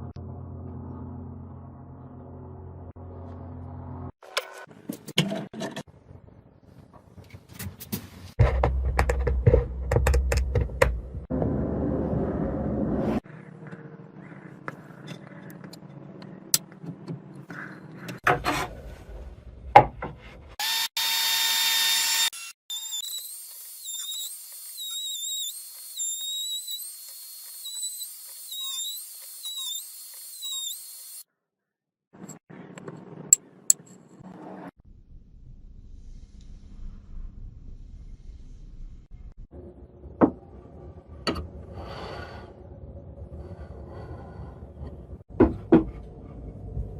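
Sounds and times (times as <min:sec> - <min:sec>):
wood router whining: 0:20.6 - 0:31.2.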